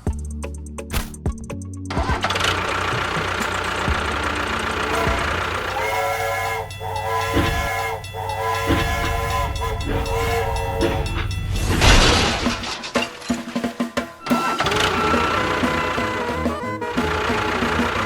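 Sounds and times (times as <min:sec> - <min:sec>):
train horn blasts: 0:02.5 - 0:12.8, 0:14.1 - 0:18.0.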